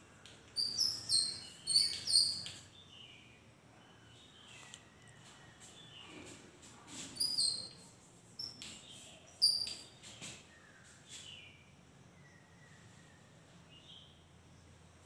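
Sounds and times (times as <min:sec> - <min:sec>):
birds chirping: 0:00.4 - 0:06.5, 0:07.2 - 0:14.2
soft falling bird whistles: 0:00.6 - 0:02.7.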